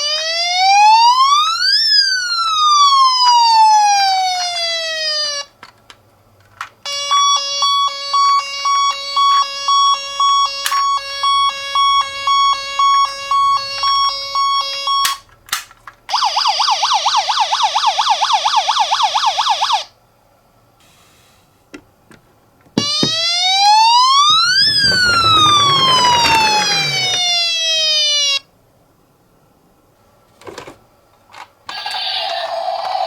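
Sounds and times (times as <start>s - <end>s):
toy electronic siren: 22.8s - 27.4s.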